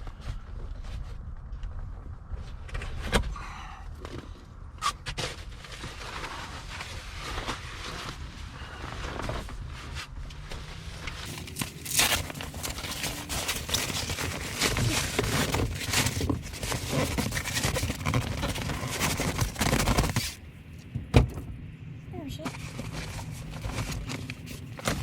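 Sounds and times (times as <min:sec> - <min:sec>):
fabric rustling and scraping: 0:05.1 - 0:20.4, 0:22.4 - 0:25.0.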